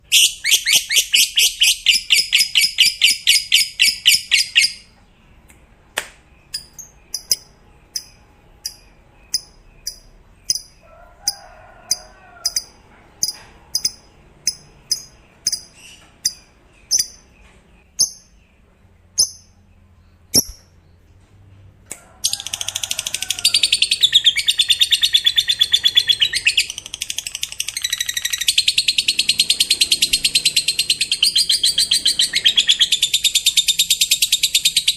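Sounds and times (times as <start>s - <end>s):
lovebird chattering trill: 6.5s - 10.8s, 11.9s - 17.2s, 19.2s - 19.6s, 20.3s - 20.6s
lovebird sharp chirps: 6.5s - 10.8s, 12.5s - 17.2s, 19.2s - 19.6s, 20.3s - 20.7s.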